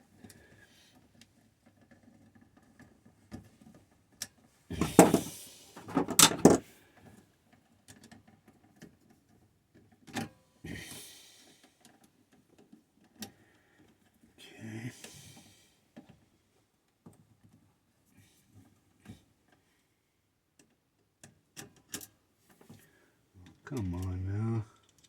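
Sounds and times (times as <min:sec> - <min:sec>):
scraping clatters: 0:04.8 - 0:06.6
light clicks of metal parts: 0:23.4 - 0:25.0.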